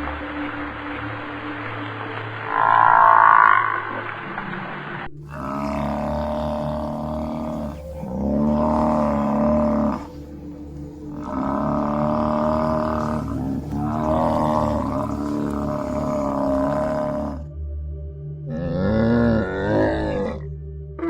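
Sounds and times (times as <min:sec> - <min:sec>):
large animal calling: 0:02.4 - 0:04.3, 0:05.2 - 0:17.4, 0:18.5 - 0:20.4.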